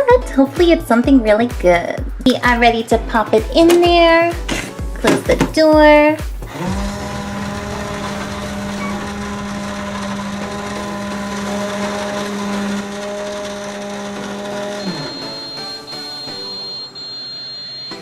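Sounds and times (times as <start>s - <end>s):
toy microwave humming: 6.5s - 18.0s
thin high beep: 14.8s - 18.0s.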